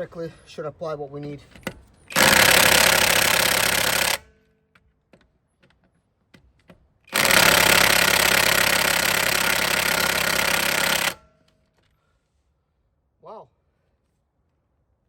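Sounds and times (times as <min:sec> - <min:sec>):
impact wrench hammering: 0:02.1 - 0:04.2, 0:07.1 - 0:11.2.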